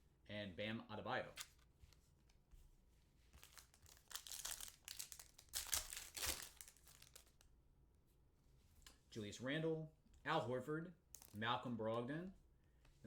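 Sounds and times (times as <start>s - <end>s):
wrapper tearing and crinkling: 3.4s - 7.5s.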